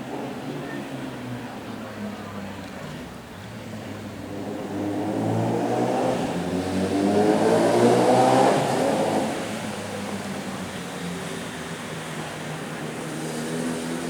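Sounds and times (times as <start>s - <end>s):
vehicle engine passing by: 4.2s - 10.2s.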